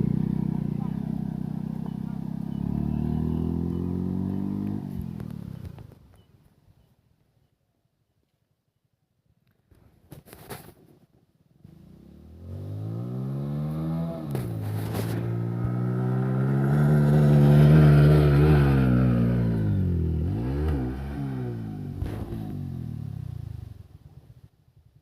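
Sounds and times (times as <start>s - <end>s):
motorcycle engine accelerating: 0.0s - 6.0s, 11.7s - 24.5s.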